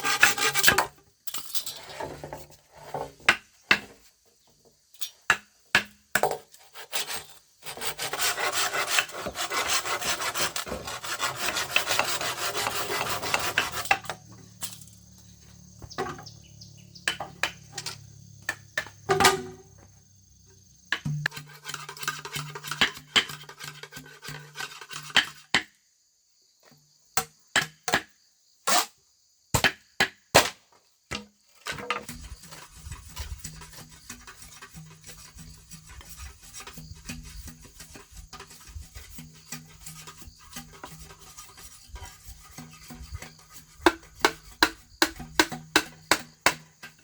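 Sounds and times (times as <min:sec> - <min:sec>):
knocks and taps on bamboo: 0:03.2 - 0:04.6, 0:05.3 - 0:06.5, 0:17.0 - 0:19.6, 0:20.9 - 0:21.5, 0:26.6 - 0:28.1, 0:29.6 - 0:32.6, 0:43.8 - 0:47.0
high insect whine: 0:12.1 - 0:22.6.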